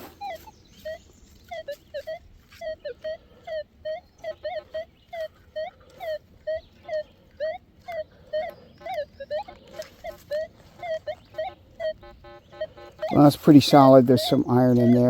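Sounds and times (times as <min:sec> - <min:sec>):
metal detector warbling tones: 0:00.0 - 0:03.0, 0:07.4 - 0:15.0.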